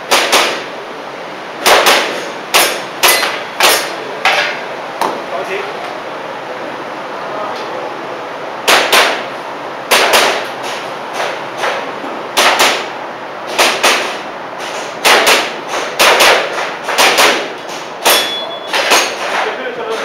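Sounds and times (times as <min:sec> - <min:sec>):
airsoft pistol shots: 0:00.1 - 0:00.7, 0:01.6 - 0:03.9, 0:08.6 - 0:09.3, 0:09.9 - 0:10.5, 0:12.4 - 0:12.9, 0:13.5 - 0:14.2, 0:15.0 - 0:19.2.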